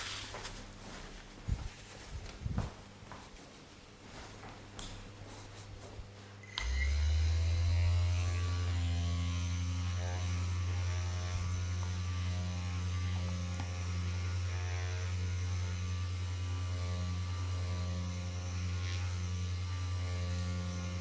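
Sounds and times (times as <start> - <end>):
electric device humming: 4.2 - 21.0.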